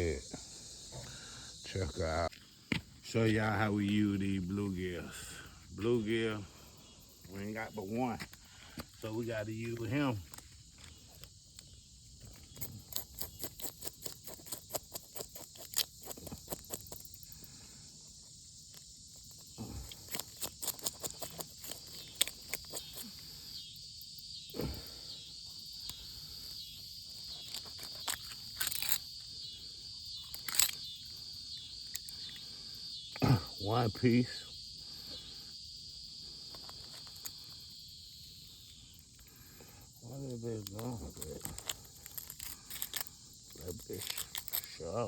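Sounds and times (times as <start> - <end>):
crickets chirping: 0.0 - 45.0.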